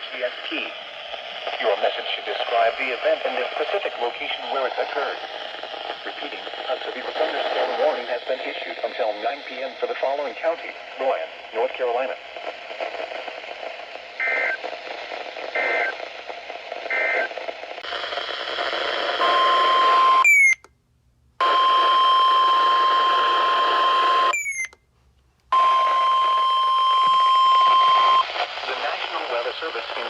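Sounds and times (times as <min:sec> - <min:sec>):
radio hiss: 0:00.0 - 0:20.2, 0:25.8 - 0:30.0
steady alarm tone: 0:25.6 - 0:28.2.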